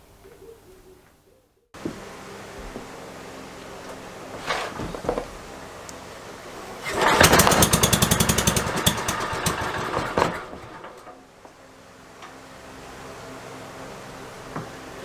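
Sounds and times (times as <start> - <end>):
engine starting and running: 6.6 - 11.3.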